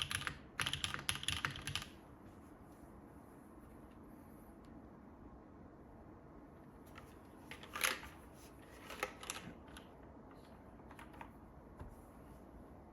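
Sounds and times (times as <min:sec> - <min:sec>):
mechanical keyboard keystrokes: 0:00.0 - 0:02.0
quiet room noise: 0:00.0 - 0:12.9.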